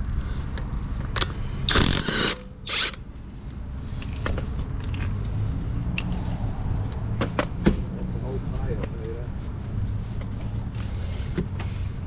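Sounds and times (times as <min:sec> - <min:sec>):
ratchet tool clicking: 0:01.2 - 0:03.0.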